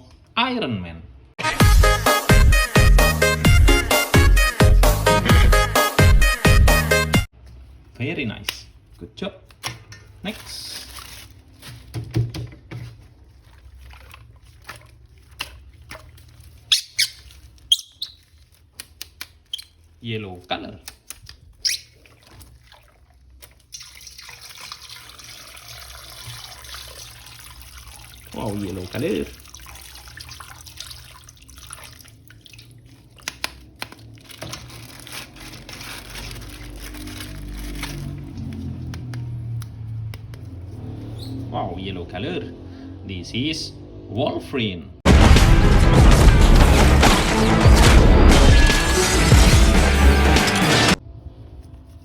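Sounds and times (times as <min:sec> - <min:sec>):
plastic figure handling noises: 0:07.4 - 0:22.5, 0:32.9 - 0:41.1
dripping: 0:10.2 - 0:20.0, 0:20.8 - 0:41.4
light crinkling: 0:32.8 - 0:40.6.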